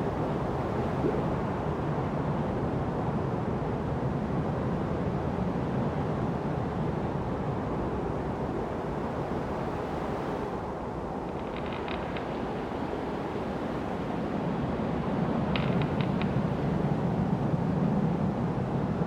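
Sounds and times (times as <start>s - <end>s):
wind through forest trees: 4.1s - 19.0s.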